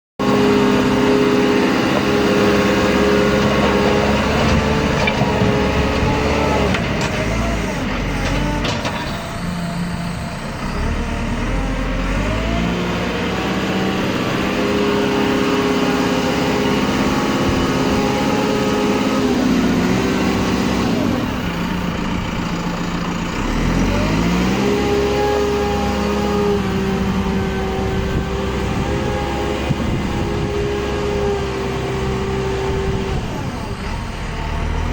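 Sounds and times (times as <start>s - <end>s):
diesel engine revving: 0.2s - 34.9s.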